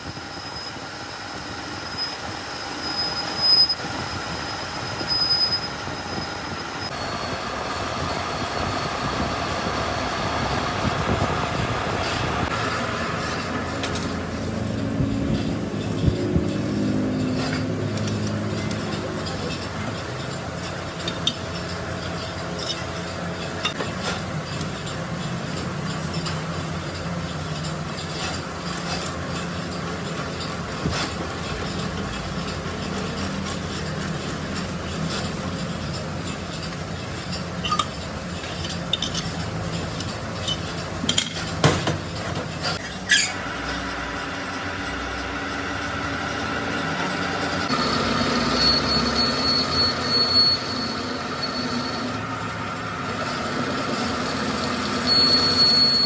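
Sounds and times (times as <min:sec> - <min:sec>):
metalworking machinery running: 0:00.0 - 0:56.0
sharp metal knocks: 0:30.1 - 0:42.8.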